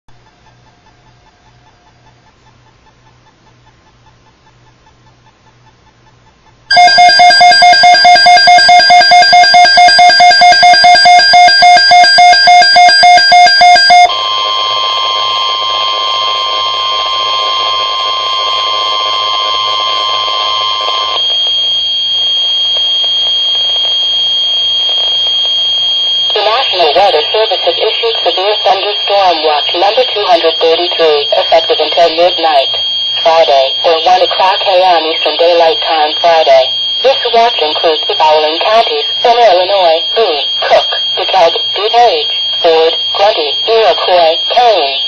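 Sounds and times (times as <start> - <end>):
rapid electronic alarm beeping: 6.7 - 45.0
steady warning alarm tone: 6.7 - 45.0
faint high whine: 12.2 - 45.0
radio hiss: 26.3 - 45.0.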